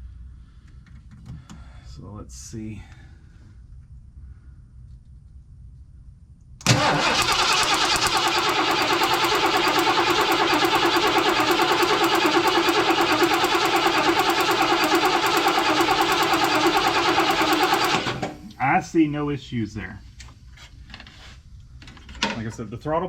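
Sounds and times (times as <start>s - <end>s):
engine cranking by starter motor: 6.6s - 18.6s.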